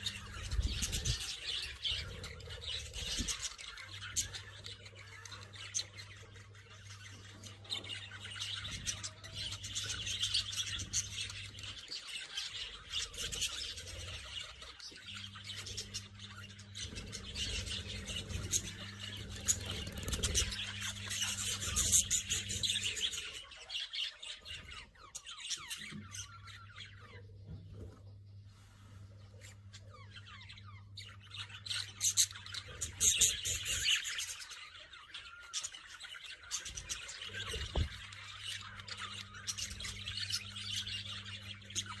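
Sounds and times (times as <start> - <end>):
parrots chattering: 0.0 - 27.2
low electrical hum: 0.0 - 42.0.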